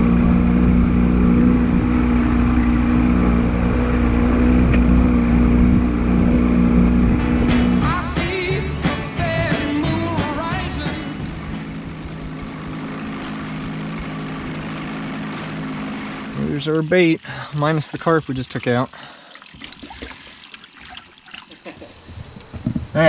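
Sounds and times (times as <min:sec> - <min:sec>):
outboard motor running: 0:00.0 - 0:16.7, 0:21.6 - 0:23.0
music with singing: 0:07.2 - 0:11.8.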